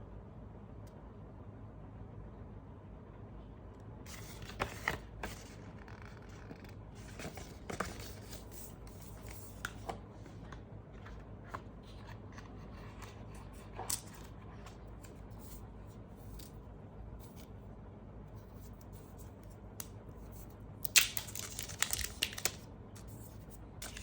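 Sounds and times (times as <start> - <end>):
low steady hum: 0.0 - 24.0
packaging rustling: 21.0 - 22.6.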